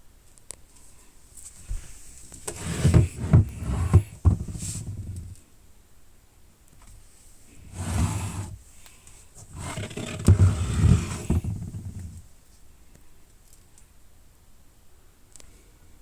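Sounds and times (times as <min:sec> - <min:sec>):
plastic case scraping: 0:02.4 - 0:05.4, 0:07.6 - 0:08.6, 0:09.4 - 0:12.2.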